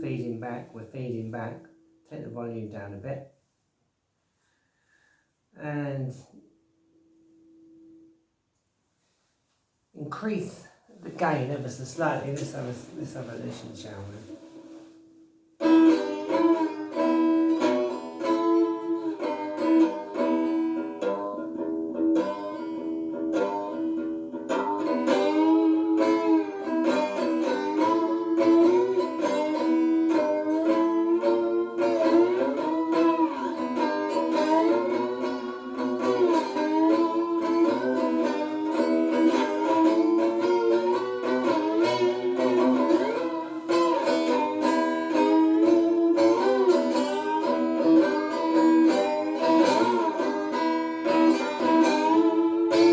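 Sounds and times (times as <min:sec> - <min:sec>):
slide guitar through amp: 0:15.6 - 0:52.9.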